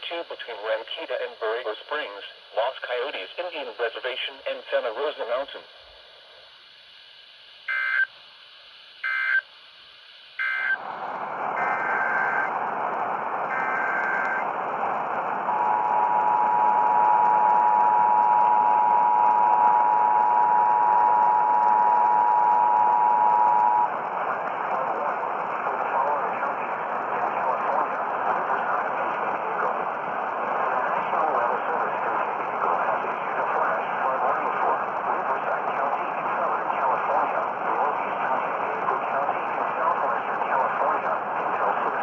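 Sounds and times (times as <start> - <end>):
static hiss: 0.0 - 42.0
two-tone attention signal: 7.7 - 8.1, 9.0 - 9.4, 10.4 - 10.8
warbling digital data bursts: 10.4 - 10.8, 11.6 - 12.5.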